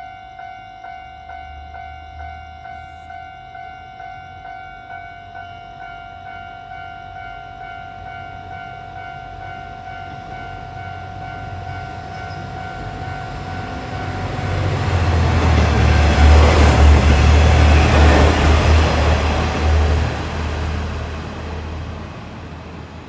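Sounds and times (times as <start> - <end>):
train rumble: 5.8 - 23.0.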